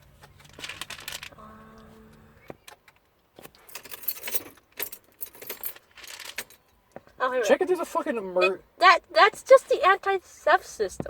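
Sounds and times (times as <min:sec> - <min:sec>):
car keys jangling: 0:02.9 - 0:06.7.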